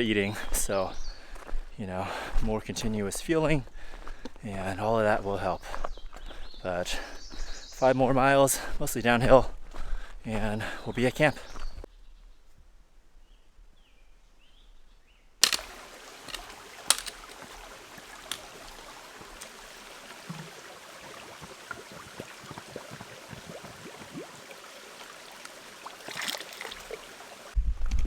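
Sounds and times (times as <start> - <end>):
sharp clicks: 15.4 - 17.4
stream water running: 15.4 - 27.6.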